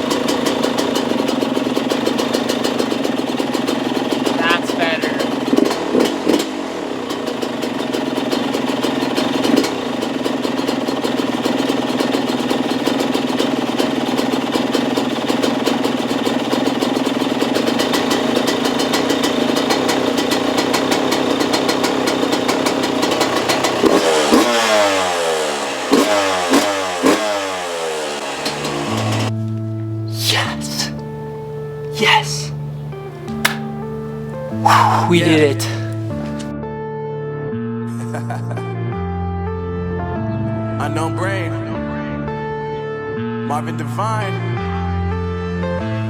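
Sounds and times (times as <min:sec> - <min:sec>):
engine revving: 0:00.0 - 0:30.0
dirt bike engine idling: 0:00.0 - 0:36.5.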